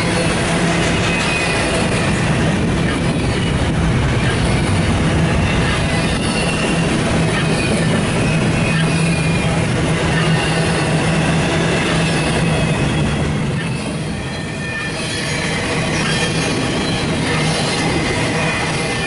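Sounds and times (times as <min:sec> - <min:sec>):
freight train rumbling on rails: 0:00.0 - 0:19.0
faint wheel squeal: 0:06.1 - 0:09.5.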